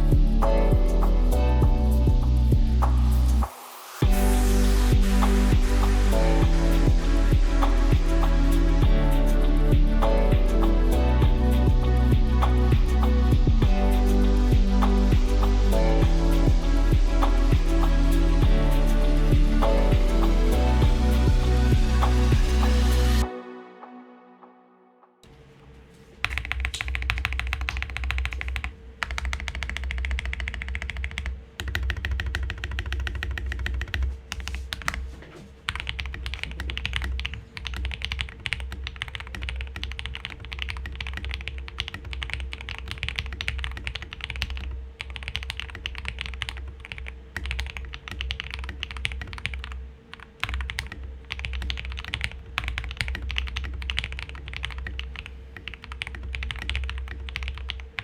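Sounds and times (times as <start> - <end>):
mechanical keyboard typing: 26.2 - 35.1, 35.7 - 58.0.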